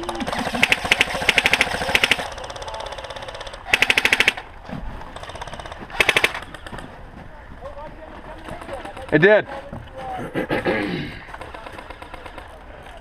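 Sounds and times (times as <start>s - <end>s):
airsoft guns firing automatic: 0.0s - 4.5s, 5.1s - 6.9s, 11.3s - 12.6s.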